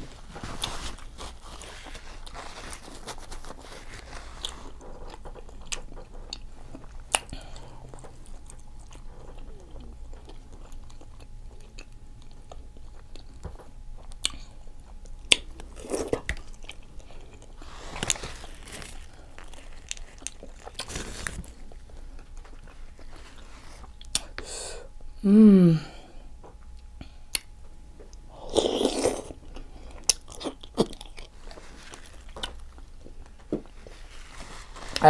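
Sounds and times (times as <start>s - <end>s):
close chewing and crunching: 0.1s - 24.4s, 26.4s - 35.0s
person humming: 25.2s - 26.1s.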